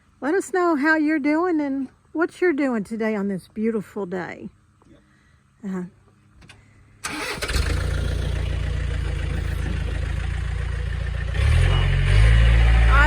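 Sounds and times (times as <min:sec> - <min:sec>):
engine cranking and running: 0:07.0 - 0:13.0.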